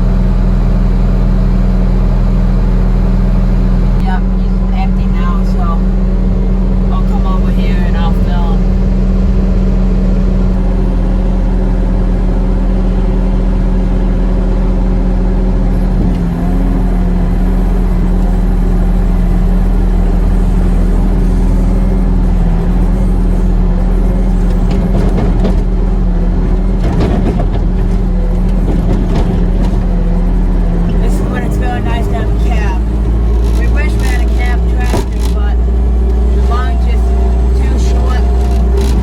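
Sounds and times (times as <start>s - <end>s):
farm machine engine running: 0.0s - 39.0s
knocks and clatter: 21.7s - 31.9s, 32.8s - 39.0s.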